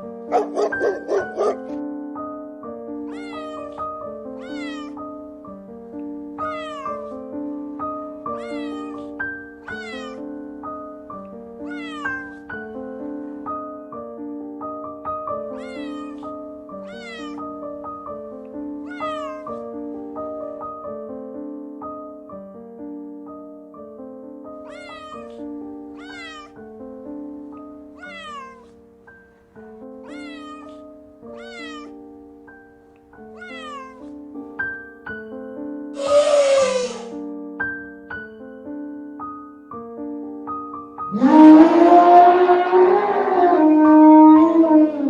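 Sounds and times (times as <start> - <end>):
piano music: 0.0 - 45.0
cat meowing: 0.3 - 1.8, 3.0 - 5.4, 6.4 - 13.0, 15.2 - 18.1, 18.8 - 20.5, 24.6 - 26.7, 27.6 - 29.3, 29.9 - 32.1, 33.2 - 34.9, 36.0 - 37.2, 41.1 - 45.0.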